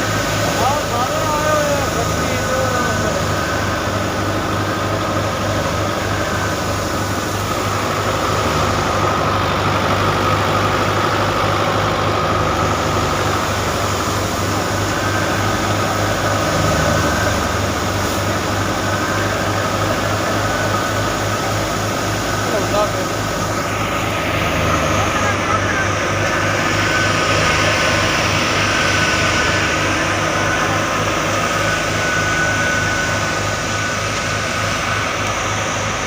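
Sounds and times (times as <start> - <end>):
harvest machine engine running: 0.0 - 36.0
steady machine whine: 0.0 - 36.0.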